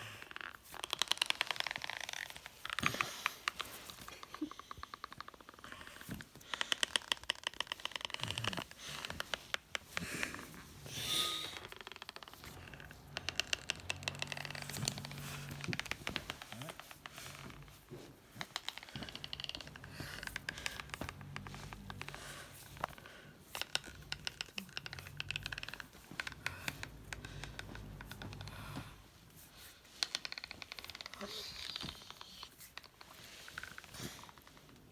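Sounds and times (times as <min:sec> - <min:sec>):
teeth grinding: 0:06.4 - 0:29.1.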